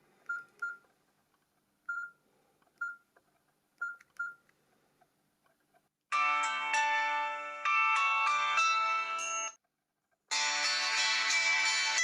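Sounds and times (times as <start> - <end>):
phone keypad beeps: 0.3 - 0.8, 1.9 - 2.2, 2.8 - 3.1, 3.8 - 4.4.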